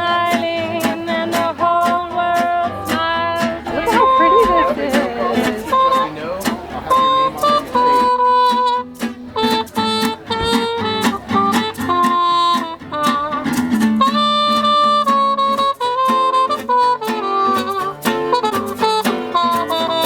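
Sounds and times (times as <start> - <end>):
plucked guitar: 0.0 - 20.0
melody of held notes: 3.7 - 9.0.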